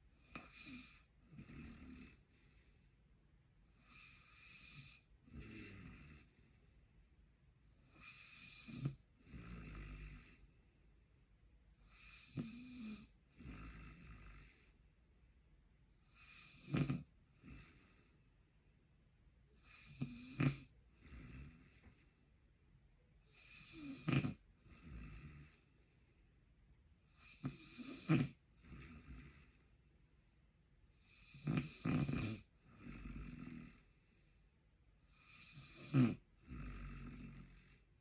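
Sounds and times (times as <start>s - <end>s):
man snoring: 0.2s - 2.4s, 3.6s - 6.4s, 7.8s - 10.5s, 11.8s - 14.7s, 16.0s - 18.2s, 19.6s - 22.0s, 23.2s - 25.7s, 27.0s - 29.6s, 30.9s - 34.0s, 35.0s - 37.9s
sharp snort: 19.7s - 20.7s, 23.4s - 24.4s, 27.2s - 29.3s, 31.1s - 33.8s.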